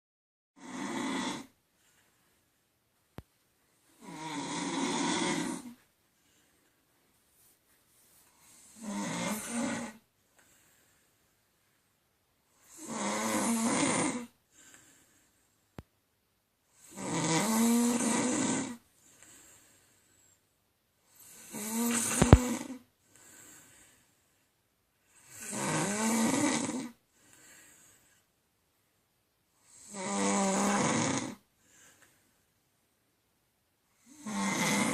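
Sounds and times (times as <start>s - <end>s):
woman snoring: 0.6s - 1.6s, 4.0s - 5.8s, 8.4s - 10.1s, 12.6s - 14.4s, 16.8s - 18.8s, 21.1s - 22.9s, 25.1s - 27.0s, 29.6s - 31.5s, 34.0s - 34.9s.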